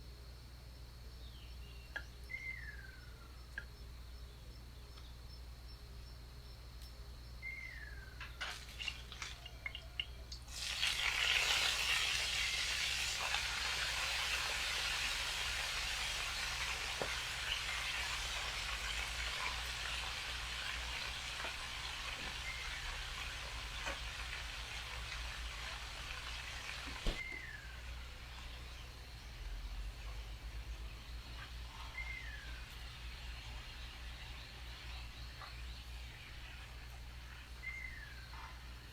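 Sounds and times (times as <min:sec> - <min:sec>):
food sizzling in a hot pan: 0:10.5 - 0:28.7.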